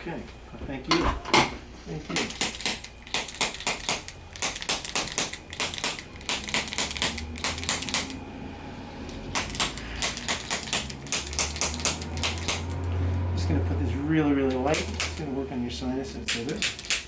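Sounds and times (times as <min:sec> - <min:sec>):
adjusting instrument clicking: 0:02.2 - 0:08.2, 0:09.1 - 0:12.9.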